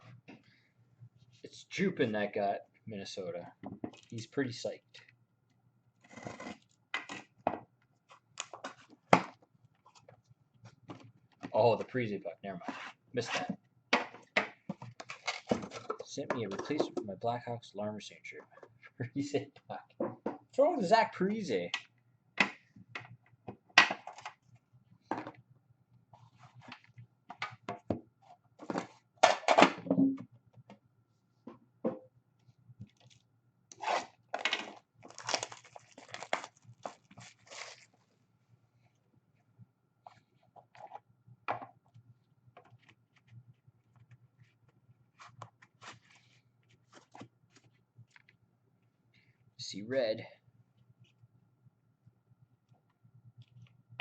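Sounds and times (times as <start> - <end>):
trading cards and packaging handled: 14.6 - 17.0, 32.8 - 38.1, 42.6 - 48.4
packaging tearing: 34.7 - 38.0.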